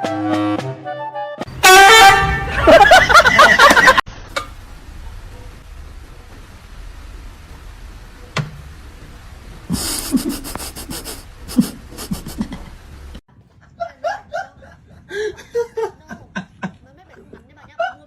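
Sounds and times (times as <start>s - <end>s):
animal panting: 9.8s - 12.4s.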